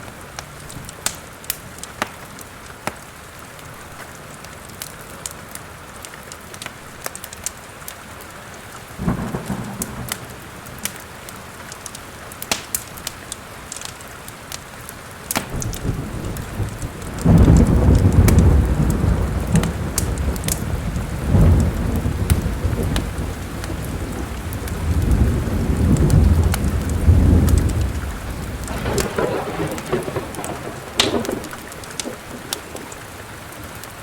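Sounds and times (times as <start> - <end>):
fireplace fire crackling: 0.0 - 34.0
steady rain: 0.0 - 34.0
rolling thunder: 9.0 - 11.1, 15.5 - 33.5.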